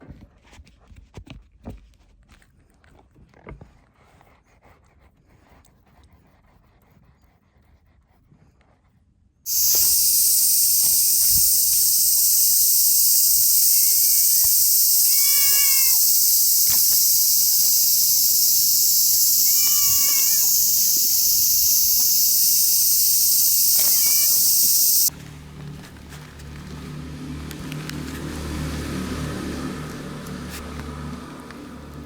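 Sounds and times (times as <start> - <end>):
loud high-pitched hiss: 9.5 - 25.1
cat meowing: 13.7 - 16.8, 19.4 - 20.6, 23.8 - 25.1.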